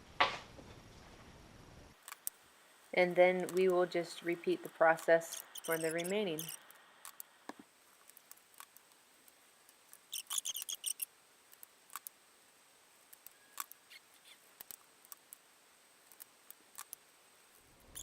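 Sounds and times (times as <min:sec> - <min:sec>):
crackly rattle: 0:05.0 - 0:07.3, 0:08.0 - 0:12.2.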